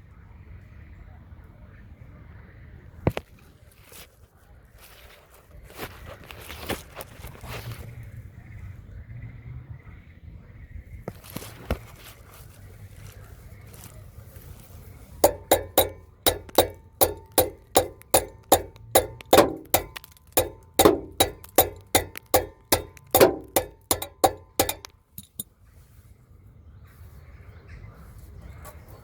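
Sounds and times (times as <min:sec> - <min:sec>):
metal being struck: 0:15.2 - 0:25.4.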